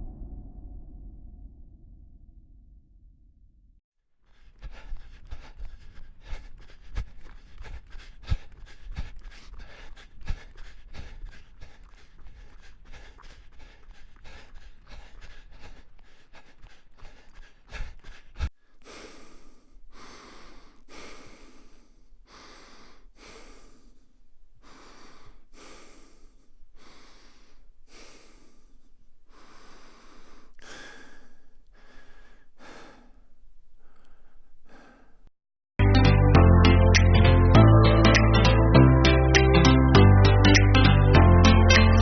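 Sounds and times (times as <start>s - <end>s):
heavy rapid breathing: 4.3s - 35.3s.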